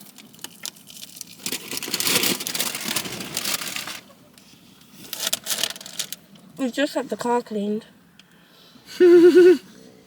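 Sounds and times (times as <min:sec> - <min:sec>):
paper bag rustling and crinkling: 0:00.0 - 0:04.1, 0:05.0 - 0:06.2.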